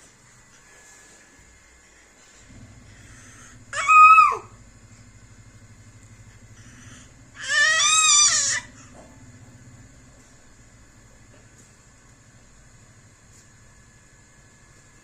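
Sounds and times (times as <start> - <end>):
baby squealing: 3.7 - 4.5, 7.4 - 8.7.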